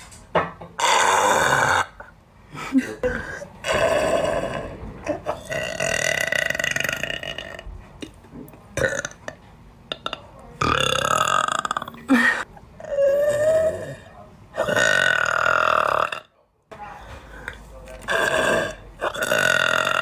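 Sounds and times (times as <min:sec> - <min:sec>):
woman burping: 0:02.8 - 0:07.6, 0:08.8 - 0:14.0, 0:14.6 - 0:16.3, 0:18.1 - 0:20.0.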